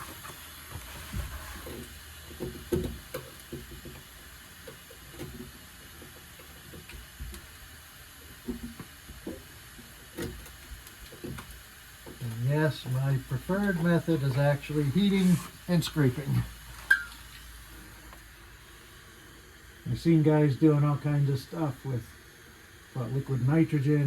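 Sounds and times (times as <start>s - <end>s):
scraper scraping sheet metal: 0.0s - 2.0s, 15.0s - 15.6s
steady hiss: 0.0s - 24.0s.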